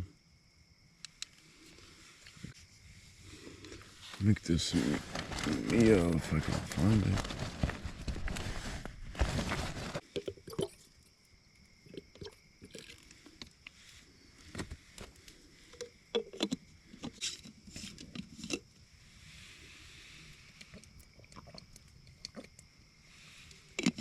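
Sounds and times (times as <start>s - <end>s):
plastic packets rustling: 4.4s - 10.0s.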